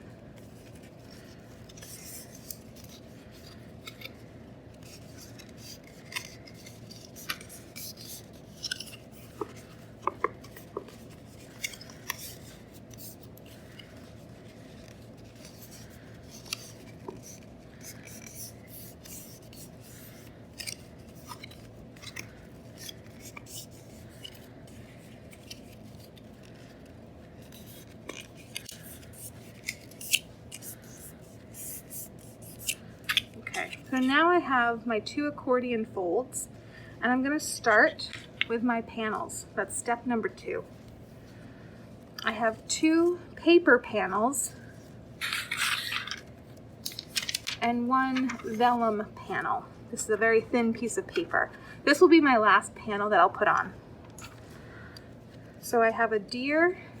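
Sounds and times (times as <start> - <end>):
low background hum: 0.0 - 57.0
paper crackling and rustling: 0.3 - 34.1, 45.2 - 48.6.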